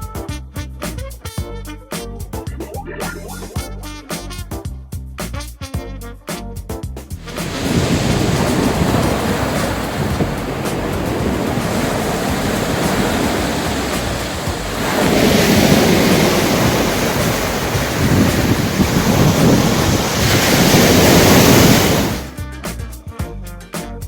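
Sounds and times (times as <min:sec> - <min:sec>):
sea waves washing ashore: 0:07.2 - 0:22.4
wind buffeting microphone: 0:07.3 - 0:22.4.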